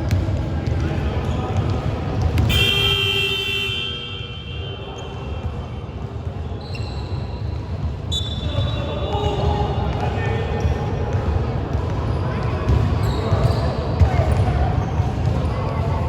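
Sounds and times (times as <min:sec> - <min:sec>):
gym noise: 0:00.7 - 0:05.6
scoreboard buzzer: 0:02.5 - 0:04.6.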